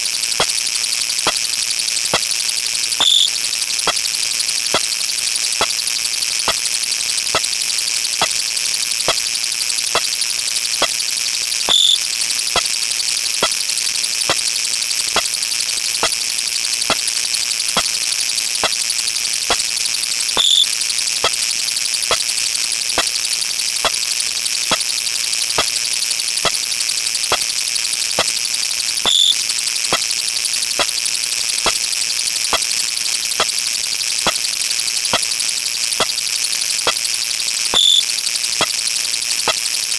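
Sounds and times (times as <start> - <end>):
electronic clicks: 3.0 - 3.3, 6.5 - 6.7, 10.0 - 10.2, 11.7 - 12.0, 18.6 - 18.8, 20.4 - 21.4, 24.7 - 24.9, 27.3 - 28.4, 29.0 - 30.1, 33.4 - 33.6, 34.2 - 34.5, 36.8 - 37.1, 37.7 - 38.8
high beep: 3.0 - 3.3, 11.7 - 12.0, 20.4 - 20.7, 29.1 - 29.4, 37.8 - 38.0
high buzzing hiss: 3.0 - 4.1, 9.9 - 14.6, 18.6 - 21.3, 29.0 - 30.1, 36.8 - 38.8.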